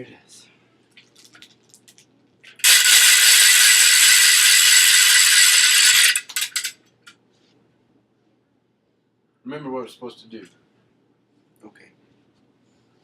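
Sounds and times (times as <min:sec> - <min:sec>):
toy noisemaker blaring: 0:02.6 - 0:06.7.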